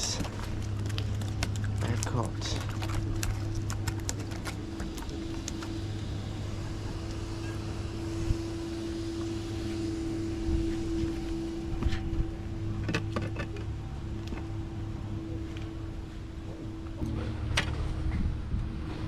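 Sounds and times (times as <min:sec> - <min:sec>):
low motor hum: 0:00.0 - 0:19.0.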